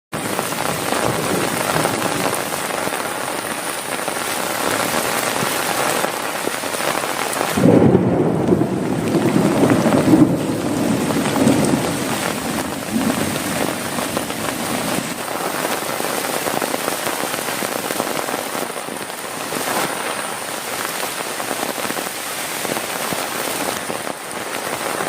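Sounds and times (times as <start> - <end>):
heavy rain falling: 0.1 - 25.0
thunder rumble: 6.9 - 21.0.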